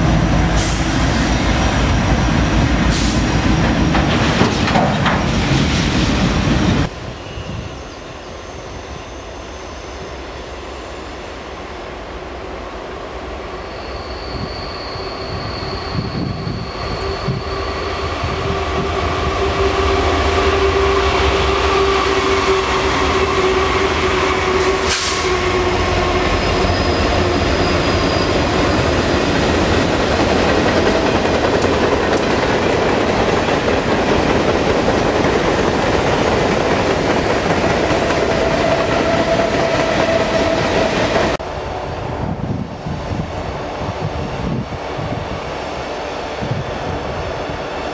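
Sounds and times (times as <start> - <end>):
train rumbling past: 0.0 - 47.9
wheels squealing: 21.9 - 31.3.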